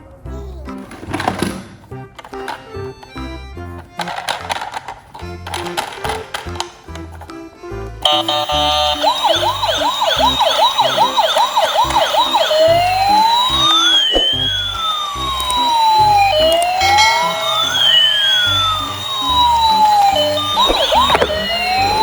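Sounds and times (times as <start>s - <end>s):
emergency vehicle siren: 8.0s - 22.0s.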